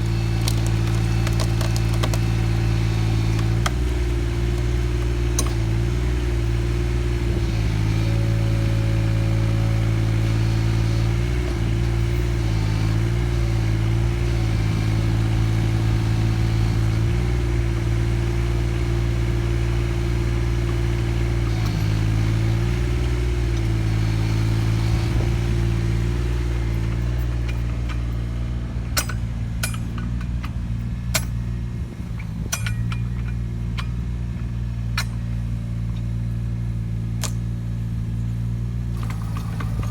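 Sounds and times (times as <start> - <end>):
sharp cracks and knocks: 0.0 - 5.9, 28.9 - 31.5, 37.2 - 37.6
excavator diesel engine running: 0.0 - 39.9.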